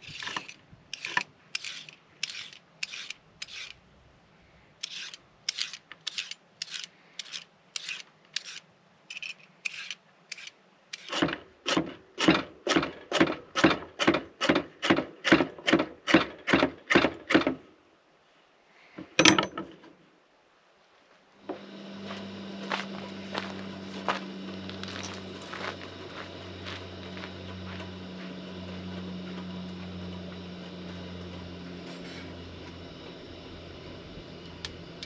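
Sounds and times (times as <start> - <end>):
regular scraping strokes: 0.0 - 3.8, 4.7 - 11.5, 22.0 - 33.0.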